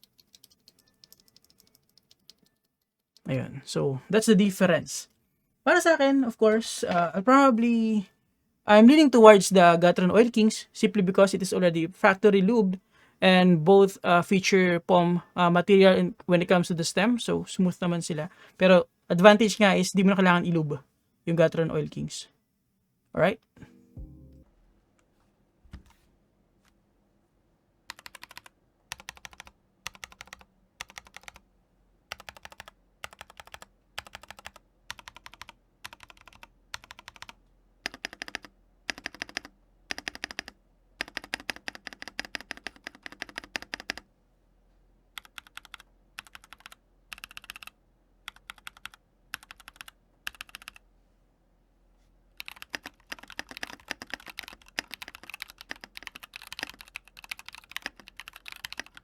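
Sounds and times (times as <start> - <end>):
mechanical keyboard typing: 0.0 - 2.7, 27.9 - 31.4, 32.1 - 44.0, 45.2 - 50.8, 52.4 - 59.0.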